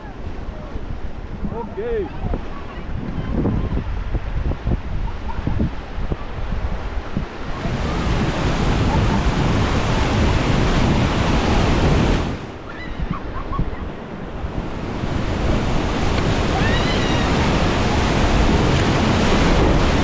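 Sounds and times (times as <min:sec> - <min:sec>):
wind buffeting microphone: 0:00.0 - 0:20.0
whitewater rushing and splashing: 0:05.9 - 0:20.0.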